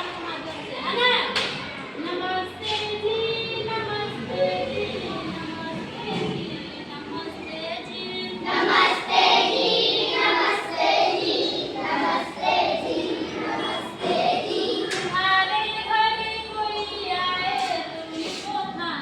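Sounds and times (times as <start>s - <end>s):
children singing: 4.1s - 15.8s.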